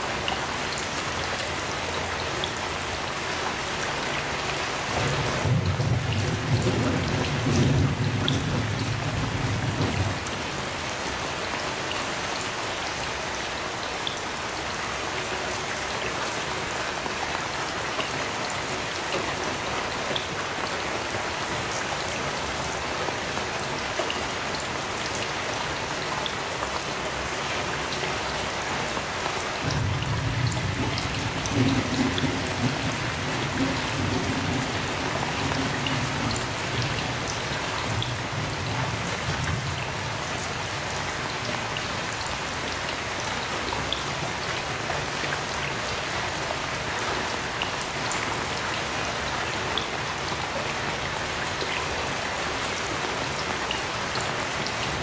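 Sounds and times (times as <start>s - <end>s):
heavy rain falling: 0.0s - 55.0s
distant thunder rumble: 4.9s - 10.5s, 29.6s - 40.2s.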